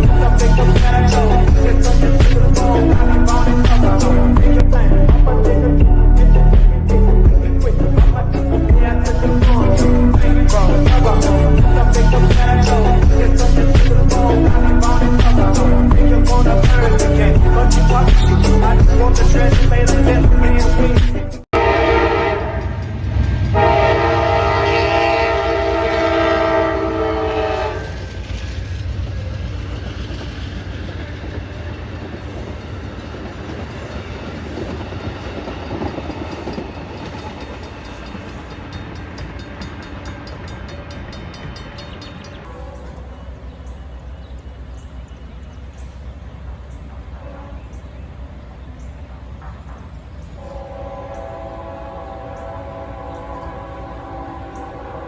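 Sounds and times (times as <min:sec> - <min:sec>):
train rumbling past: 0:00.0 - 0:55.0
locomotive horn: 0:21.6 - 0:28.1, 0:47.2 - 0:47.8, 0:50.4 - 0:55.0
wheels clicking on rails: 0:26.9 - 0:43.0.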